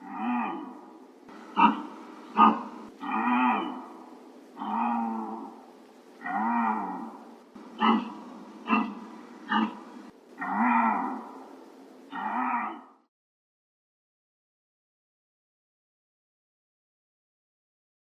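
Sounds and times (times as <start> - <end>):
deer drawn-out bleats: 0.0 - 11.5, 12.1 - 13.0
deer short sharp calls: 0.0 - 12.8.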